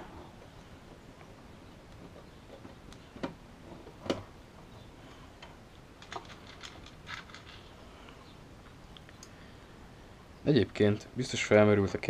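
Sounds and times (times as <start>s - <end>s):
metal parts clicking and knocking: 6.0s - 7.7s.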